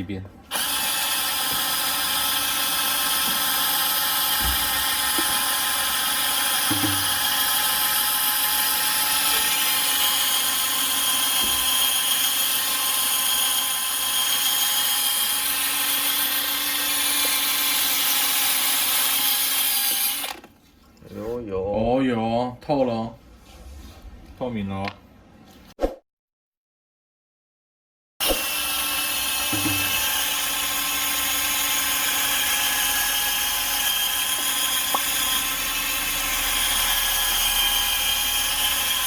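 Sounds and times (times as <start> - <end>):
cordless screwdriver motor whine: 0.5 - 20.5, 28.2 - 39.0.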